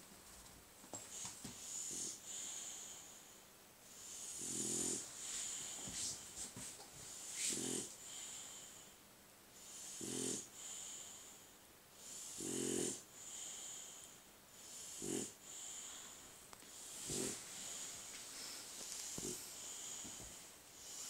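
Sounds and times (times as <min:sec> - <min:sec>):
low buzzing snores: 0:01.6 - 0:03.4, 0:04.0 - 0:06.0, 0:07.2 - 0:09.0, 0:09.6 - 0:18.0, 0:19.0 - 0:21.0.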